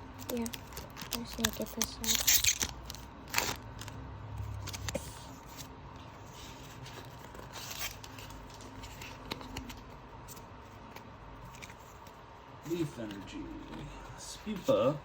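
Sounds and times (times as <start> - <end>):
cards rustling: 0.2 - 5.7, 6.3 - 15.0
foil pack tearing: 0.3 - 3.9.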